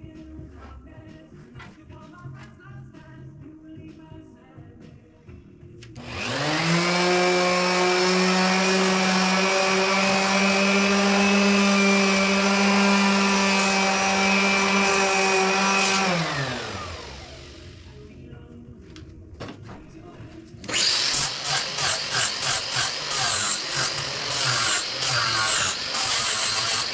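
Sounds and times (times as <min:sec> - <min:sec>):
electric power tool motor: 0:06.0 - 0:18.0, 0:20.7 - 0:26.9.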